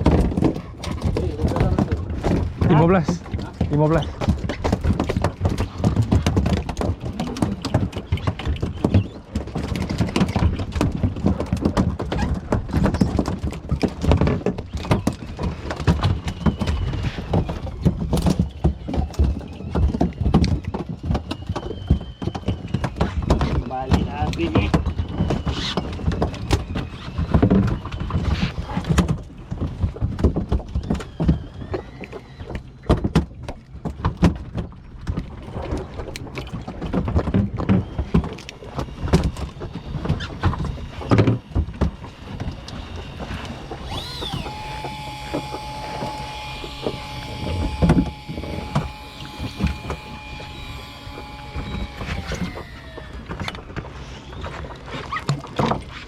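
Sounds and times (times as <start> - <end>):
knocks and thumps on boat: 0.0 - 56.0
electric fishing reel motor whine: 37.6 - 54.8.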